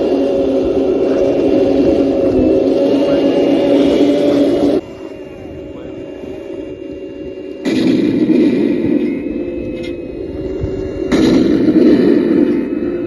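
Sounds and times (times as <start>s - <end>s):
steady hum: 0.0s - 13.0s
tank cannon firing: 7.6s - 9.2s, 11.1s - 12.9s.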